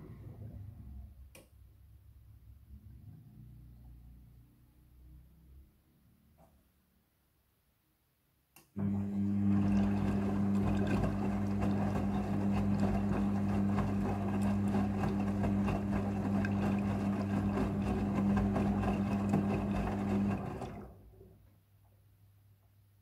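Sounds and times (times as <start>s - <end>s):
washing machine motor hum: 8.8s - 21.3s
water sloshing and churning: 9.4s - 20.9s.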